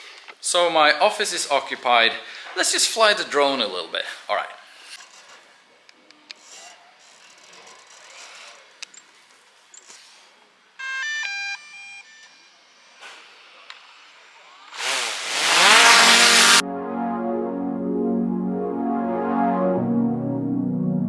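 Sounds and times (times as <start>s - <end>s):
drone motors whining: 14.7s - 16.6s.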